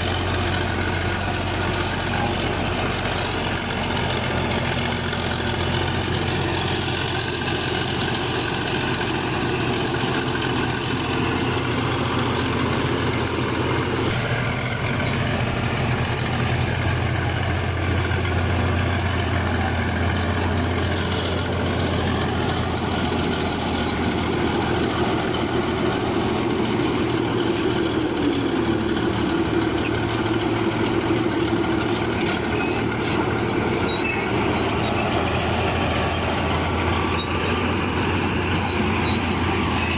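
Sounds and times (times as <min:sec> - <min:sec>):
bulldozer diesel engine running: 0:00.0 - 0:39.9.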